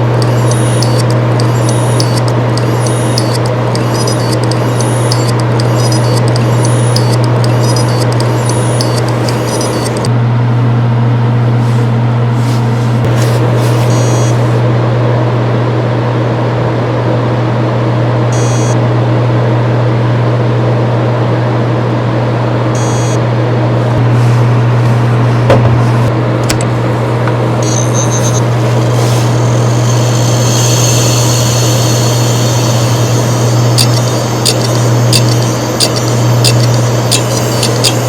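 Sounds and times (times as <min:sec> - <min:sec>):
hard disk drive click: 0:00.0 - 0:10.1, 0:33.5 - 0:38.0
hard disk drive ticking: 0:00.0 - 0:10.1, 0:27.6 - 0:38.0
hard disk drive humming: 0:00.0 - 0:15.4, 0:18.1 - 0:19.0, 0:22.4 - 0:38.0.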